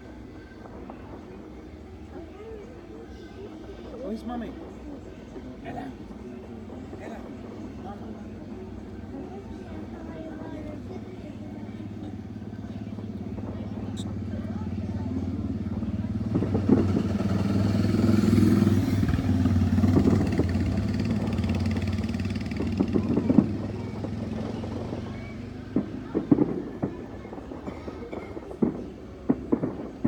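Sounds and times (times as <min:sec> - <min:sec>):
firework bangs: 0:00.0 - 0:30.0.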